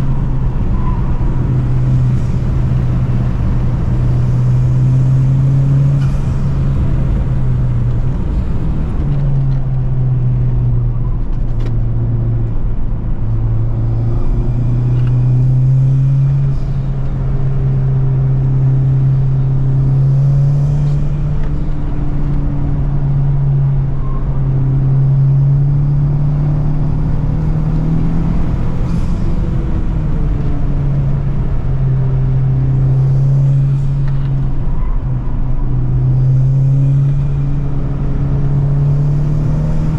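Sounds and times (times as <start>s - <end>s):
car engine revving: 0.0s - 10.6s, 24.8s - 39.9s
road rumble: 0.0s - 39.9s.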